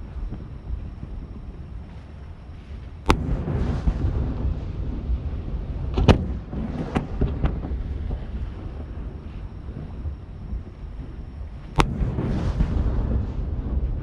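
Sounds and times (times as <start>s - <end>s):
wind rumble on microphone: 0.0s - 14.0s
fireworks bangs: 3.1s - 9.0s, 11.8s - 14.0s
firework hiss: 11.8s - 14.0s.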